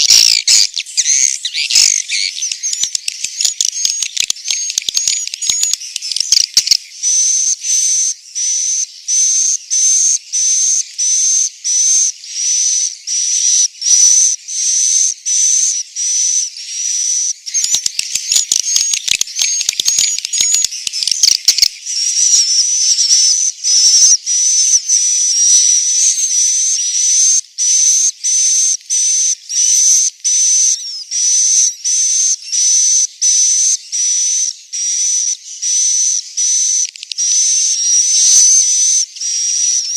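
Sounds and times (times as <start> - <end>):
swiftlets twittering: 0.0 - 6.8, 17.5 - 21.7.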